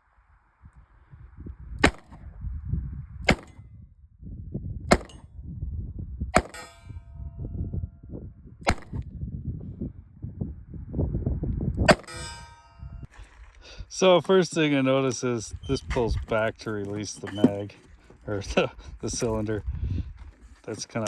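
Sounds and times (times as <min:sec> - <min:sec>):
gunshots: 0:01.8 - 0:02.2, 0:03.3 - 0:03.6, 0:04.9 - 0:05.2, 0:06.4 - 0:06.7, 0:08.7 - 0:09.0, 0:11.9 - 0:12.3
ringing metallic tone: 0:06.4 - 0:07.7, 0:11.9 - 0:13.1.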